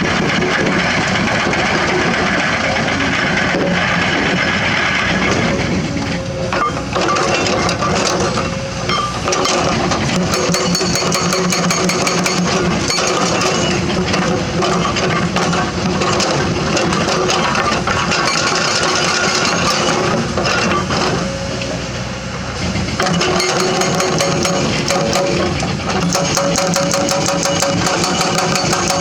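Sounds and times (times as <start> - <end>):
hydraulic excavator running: 0.0 - 29.0
bucket clanking against rock: 8.9 - 13.8.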